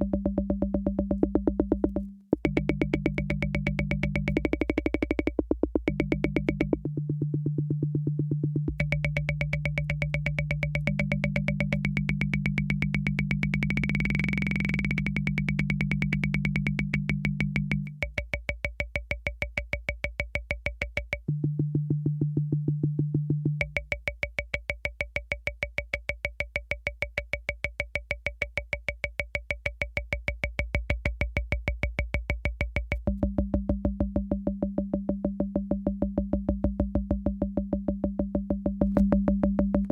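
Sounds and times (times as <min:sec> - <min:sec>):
fast electronic clicks: 0:01.1 - 0:06.8, 0:08.7 - 0:21.4.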